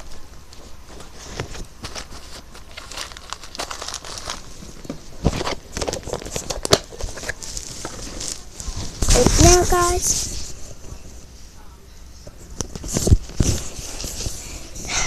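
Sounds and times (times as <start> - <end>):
crinkling and clicking of small items: 0.0 - 10.6.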